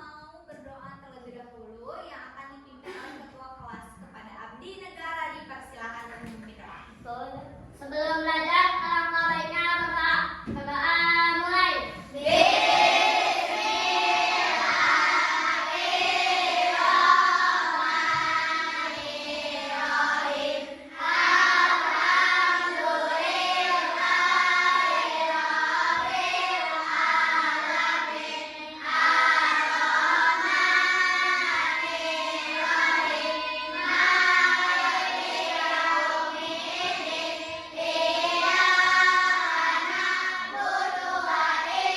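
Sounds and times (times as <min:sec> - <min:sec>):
children singing in unison: 0:11.0 - 0:41.9.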